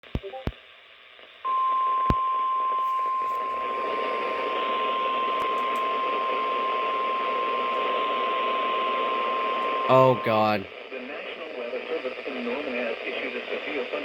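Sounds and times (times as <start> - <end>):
radio hiss: 3.0 - 14.0
steady alarm tone: 6.4 - 10.6.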